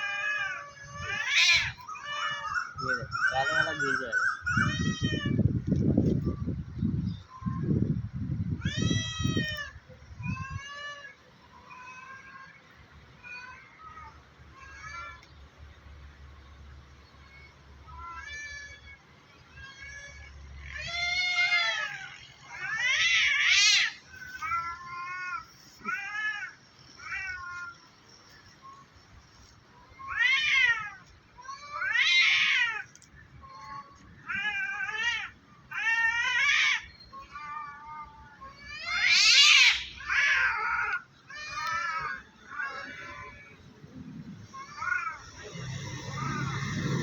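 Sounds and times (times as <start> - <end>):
cats caterwauling: 0.0 - 5.7, 8.6 - 15.3, 17.2 - 47.0.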